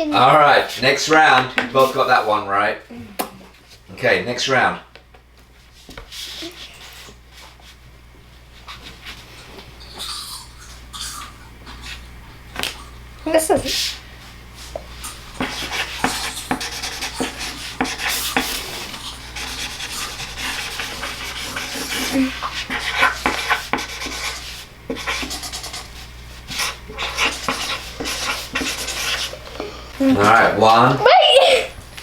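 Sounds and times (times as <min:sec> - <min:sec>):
person chewing potato chips: 0:09.8 - 0:13.0, 0:15.0 - 0:23.2.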